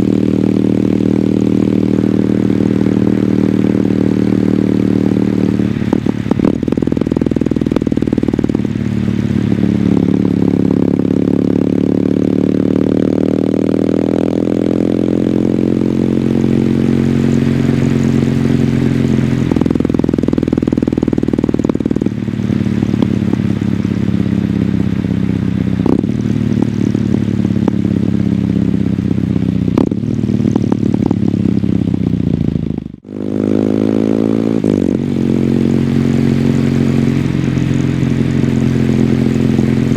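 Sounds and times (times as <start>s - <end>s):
motorcycle engine running: 0.0s - 39.9s.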